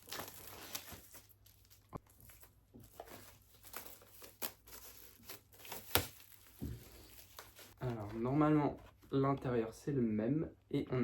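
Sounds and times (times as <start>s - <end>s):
plastic wrap crinkling and tearing: 0.0s - 8.4s.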